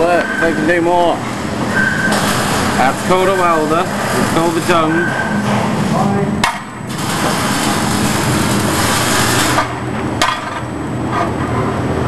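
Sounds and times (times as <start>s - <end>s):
welding arc crackling: 0.0s - 5.0s, 6.4s - 10.9s.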